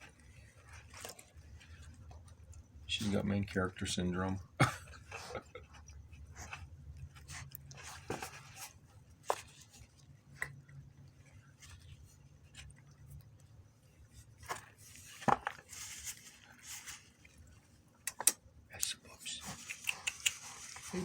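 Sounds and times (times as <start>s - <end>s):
cat chewing crunchy snack: 0.0s - 18.4s, 19.3s - 21.0s.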